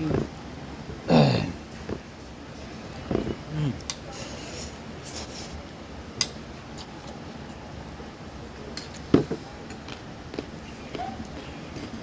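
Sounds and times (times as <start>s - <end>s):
soft chewing: 9.7s - 12.0s.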